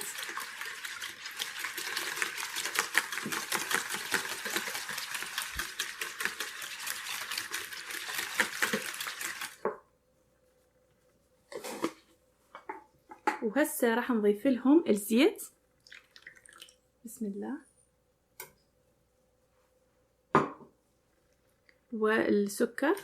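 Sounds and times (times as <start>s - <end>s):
whisk clicking against bowl: 0.0s - 9.6s.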